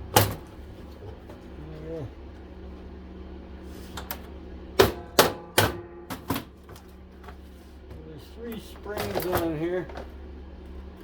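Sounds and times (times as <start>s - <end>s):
stove blower humming: 0.0s - 11.0s
plastic and metal parts clattering: 8.8s - 10.1s.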